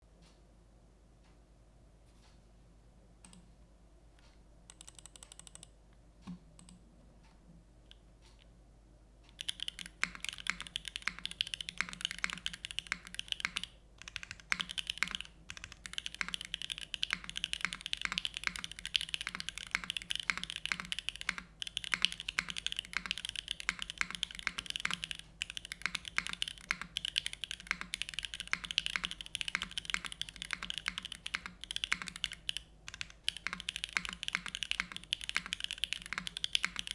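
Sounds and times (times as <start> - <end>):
typing on mechanical keyboard: 4.7 - 5.7, 9.3 - 36.9.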